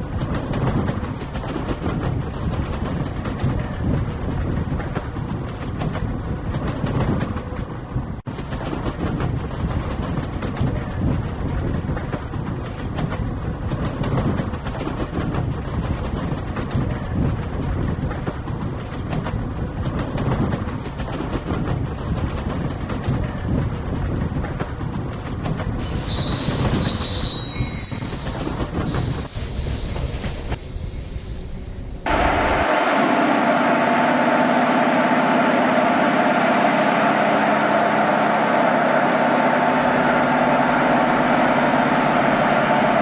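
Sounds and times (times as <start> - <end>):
train wheels clattering on track: 0.0 - 30.6
steel wheels squealing on rail: 25.8 - 32.4, 39.6 - 40.3, 41.8 - 43.0.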